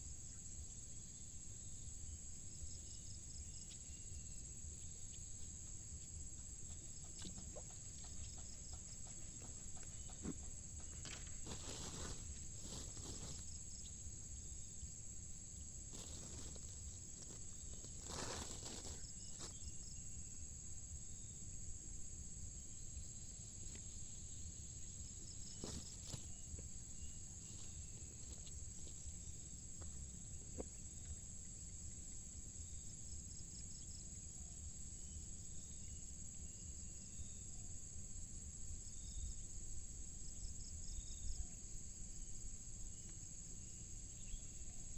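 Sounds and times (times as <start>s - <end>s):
insects droning: 0.0s - 44.9s
microphone handling rustles: 11.4s - 13.5s, 15.9s - 19.6s, 25.5s - 26.4s.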